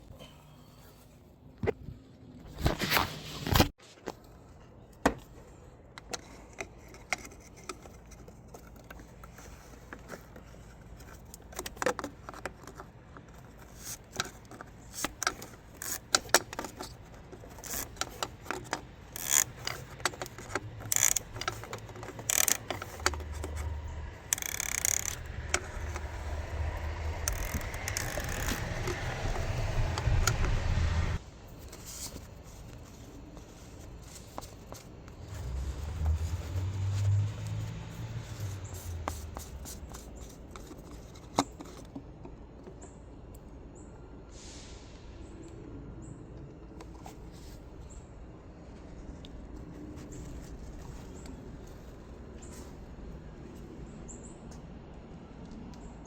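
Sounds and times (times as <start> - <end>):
low rumbling scrape: 25.0 - 31.2.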